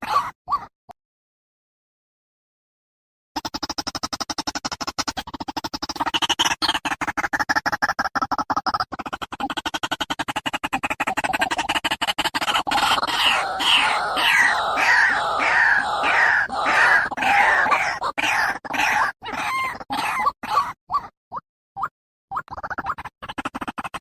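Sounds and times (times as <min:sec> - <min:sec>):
waterhen calling: 0:12.7 - 0:20.2.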